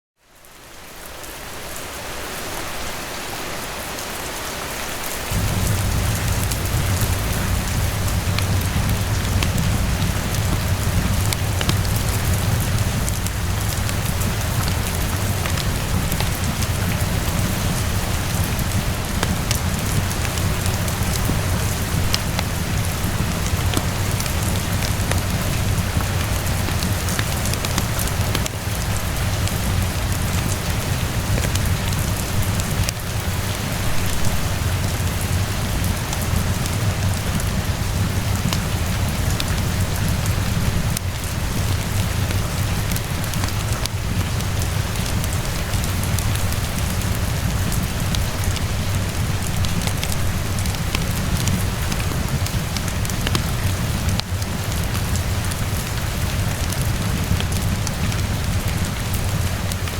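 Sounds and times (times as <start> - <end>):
steady rain with ticks: 0.2 - 59.9
low steady rumble: 5.3 - 33.0.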